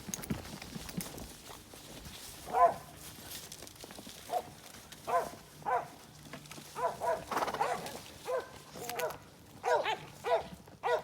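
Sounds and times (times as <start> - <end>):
dog barking: 2.5 - 2.9, 4.3 - 4.5, 5.1 - 5.9, 6.8 - 11.0.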